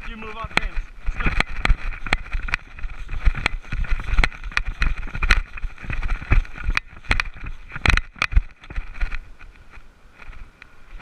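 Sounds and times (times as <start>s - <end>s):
gear jostling: 0.0s - 11.0s
sharp clicks and knocks: 0.0s - 11.0s.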